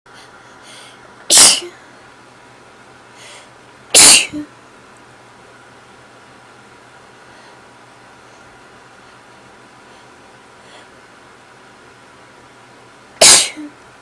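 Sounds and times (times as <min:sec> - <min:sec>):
person sneezing: 0:01.3 - 0:01.8, 0:03.9 - 0:04.5, 0:13.2 - 0:13.8.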